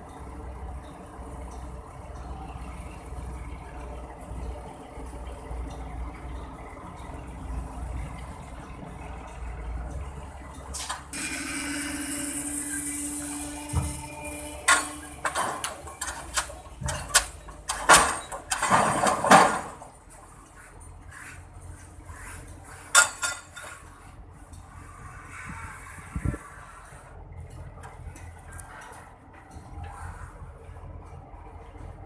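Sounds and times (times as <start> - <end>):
metallic clanks and knocks: 13.7 - 19.9.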